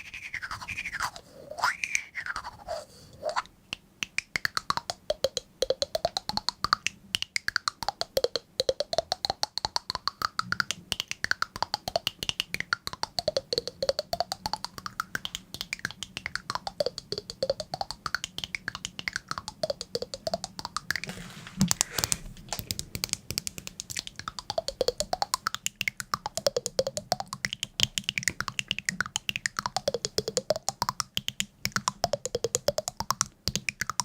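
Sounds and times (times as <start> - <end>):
fast even clicking: 0.0 - 34.0.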